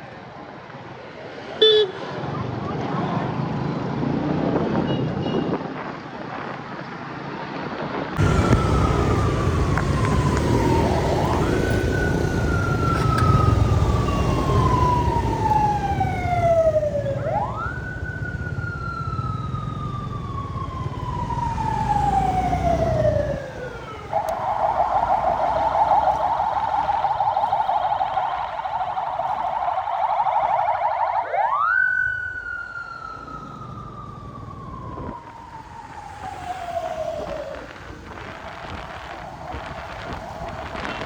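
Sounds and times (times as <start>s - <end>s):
low road noise: 0.0s - 41.0s
ambulance siren wailing: 8.2s - 41.0s.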